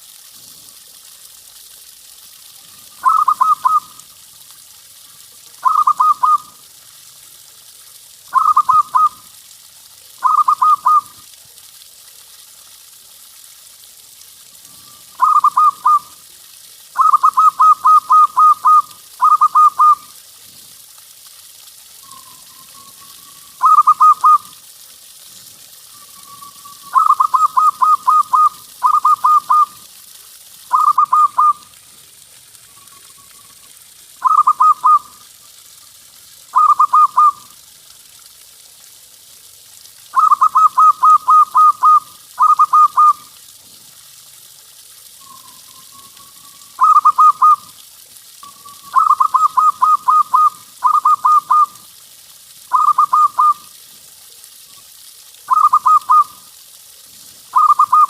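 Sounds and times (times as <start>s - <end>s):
dove cooing with staccato trills: 3.0s - 3.9s, 5.6s - 6.5s, 8.3s - 9.2s, 10.2s - 11.1s, 15.2s - 16.1s, 17.0s - 20.0s, 23.6s - 24.5s, 26.9s - 29.7s, 34.2s - 35.1s, 36.6s - 37.4s, 46.8s - 47.7s, 48.9s - 51.7s, 57.6s - 58.0s.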